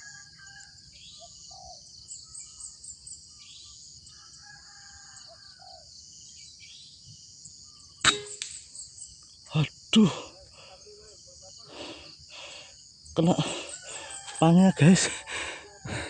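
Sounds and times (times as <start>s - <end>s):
bird chirps: 0.9s - 4.0s, 6.2s - 9.6s
air rifle shot: 8.0s - 8.4s.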